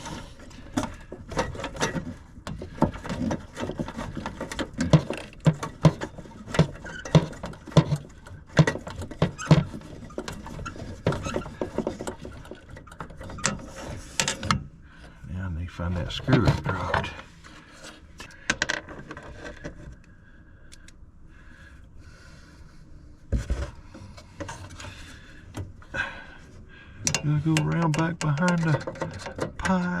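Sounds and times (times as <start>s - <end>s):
tools clicking and tapping on metal: 27.0s - 30.0s.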